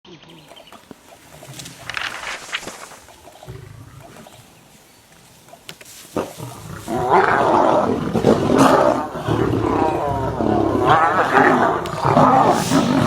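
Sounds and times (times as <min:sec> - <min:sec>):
lions roaring and snarling: 0:01.0 - 0:13.0.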